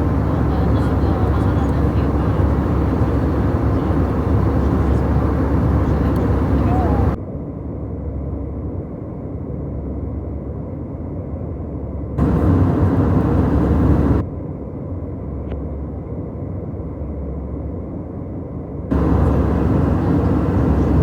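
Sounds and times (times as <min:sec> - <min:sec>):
airliner cabin engine rumble: 0:00.0 - 0:07.2, 0:12.2 - 0:14.2, 0:18.9 - 0:21.0.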